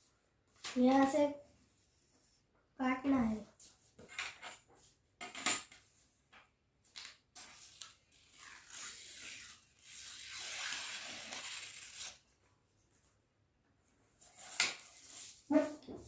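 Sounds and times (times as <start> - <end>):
paper being cut: 7.4 - 12.2.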